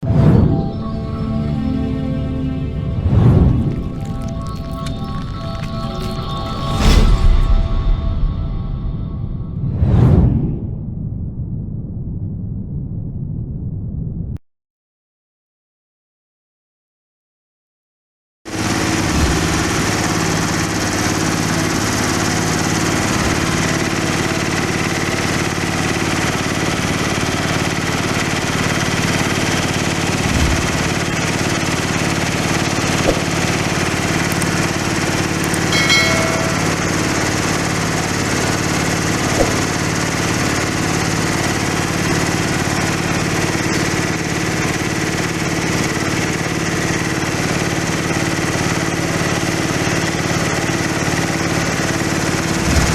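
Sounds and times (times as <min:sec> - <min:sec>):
hammer mill running: 0:18.6 - 0:52.9.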